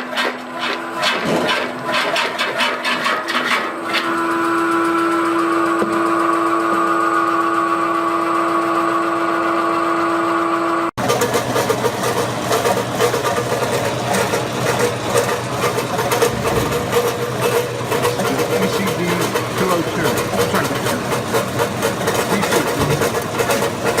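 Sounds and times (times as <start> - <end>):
machine motor hum: 3.8 - 24.0
rough machine clattering: 11.0 - 24.0.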